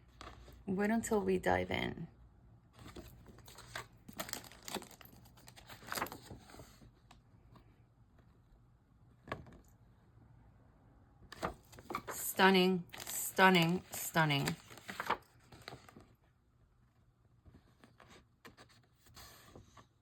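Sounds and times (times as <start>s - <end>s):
papers rustling and crinkling: 2.8s - 7.2s, 11.3s - 16.2s.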